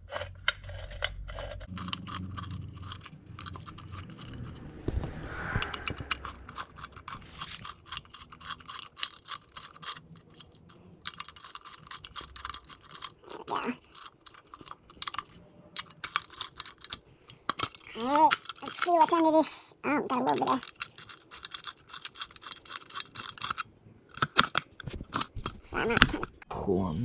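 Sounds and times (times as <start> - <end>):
hand tools clicking on metal: 6.6 - 19.3, 20.2 - 26.4.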